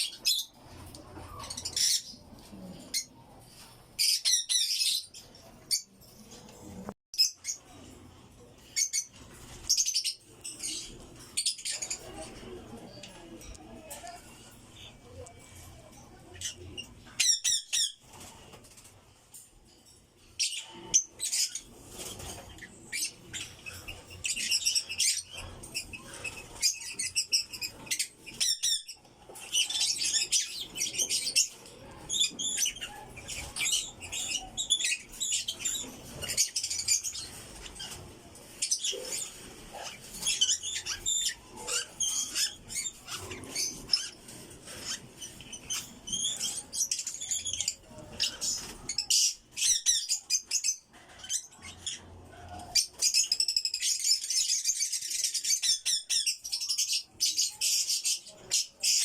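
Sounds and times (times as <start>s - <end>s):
lovebirds chirping: 20.4s - 59.0s.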